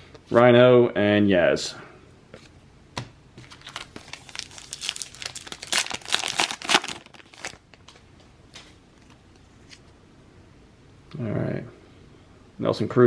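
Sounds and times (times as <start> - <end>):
wrapper tearing and crinkling: 3.4 - 7.9.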